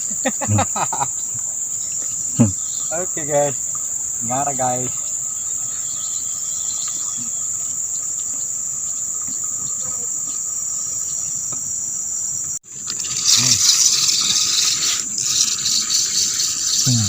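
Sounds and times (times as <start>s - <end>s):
insects shrilling: 0.0s - 17.0s
rushing hiss: 12.7s - 17.0s.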